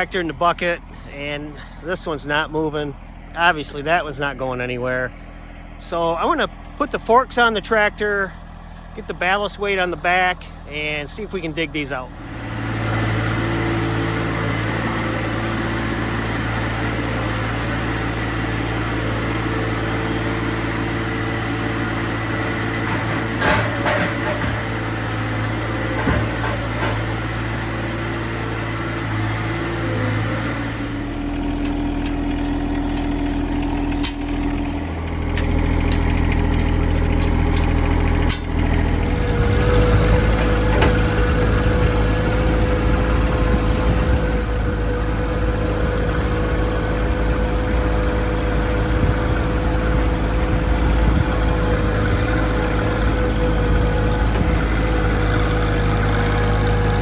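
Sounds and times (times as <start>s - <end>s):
tractor engine running: 0.0s - 57.0s
sharp metallic knocks: 22.6s - 27.3s, 31.6s - 34.6s, 35.2s - 38.8s.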